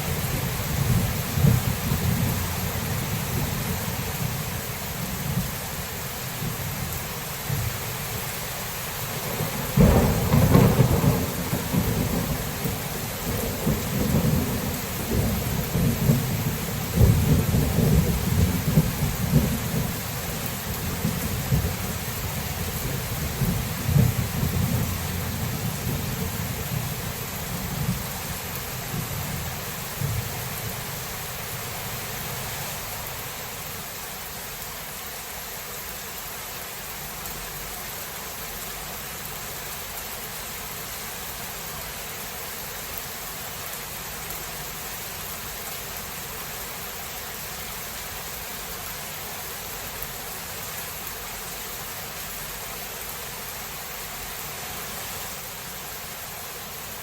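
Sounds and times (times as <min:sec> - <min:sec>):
thunder rumbling: 0:00.0 - 0:05.6, 0:09.2 - 0:33.2
heavy rain: 0:00.0 - 0:57.0.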